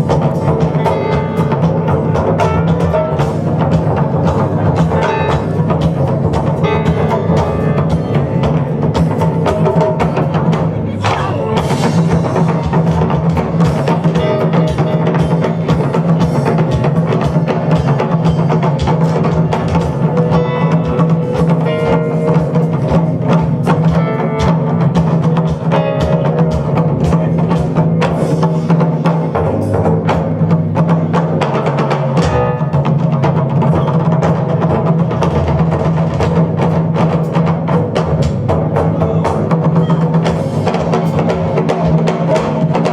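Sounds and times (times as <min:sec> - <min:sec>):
taiko drums and band funk groove: 0:00.0 - 0:42.9.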